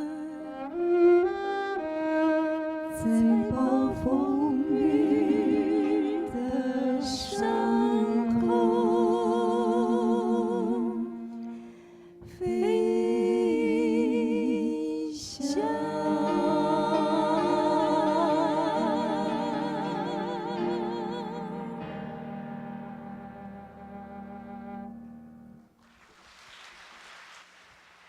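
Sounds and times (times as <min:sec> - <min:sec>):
sustained accompaniment: 0:00.0 - 0:25.8
person singing with vibrato: 0:02.9 - 0:22.7.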